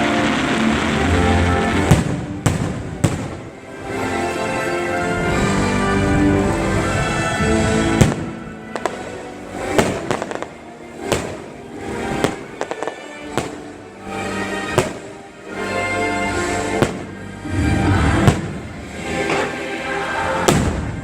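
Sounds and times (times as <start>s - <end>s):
fireworks bursting: 0.0s - 4.1s, 6.9s - 21.0s
fireworks show music: 0.0s - 21.0s.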